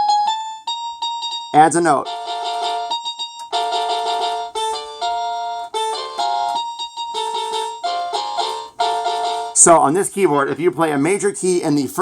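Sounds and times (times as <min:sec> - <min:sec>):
toy keyboard block chords: 0:00.0 - 0:09.8.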